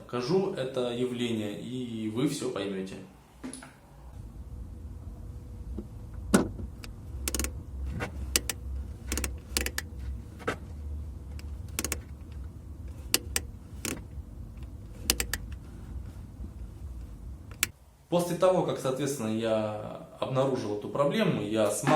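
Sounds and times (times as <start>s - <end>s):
steady low rumble: 4.0s - 17.8s
clutch pedal creaking: 5.8s - 17.8s.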